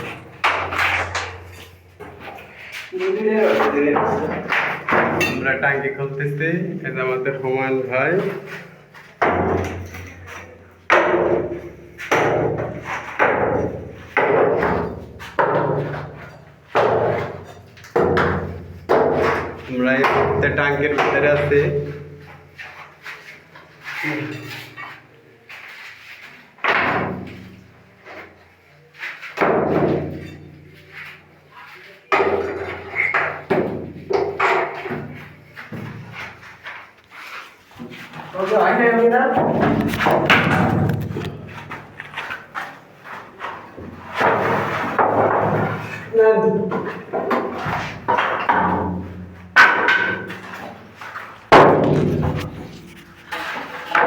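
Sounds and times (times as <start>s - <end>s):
hammer striking concrete: 0.0s - 1.5s, 3.7s - 5.6s, 9.2s - 22.1s, 46.7s - 50.7s, 51.5s - 52.8s.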